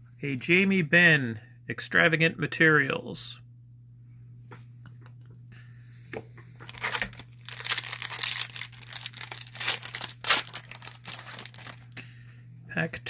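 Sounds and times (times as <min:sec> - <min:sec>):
wrapper tearing and crinkling: 0:06.6 - 0:11.8.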